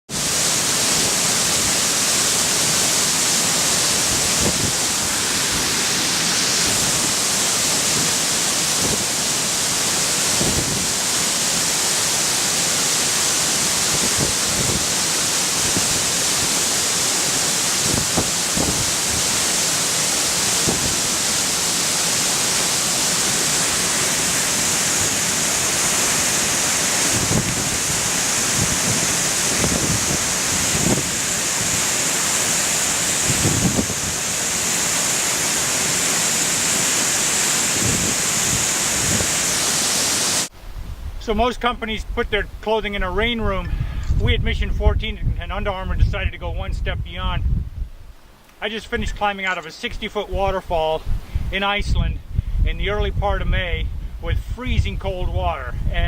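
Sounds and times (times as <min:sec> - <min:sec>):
waterfall rushing: 0:00.1 - 0:40.5.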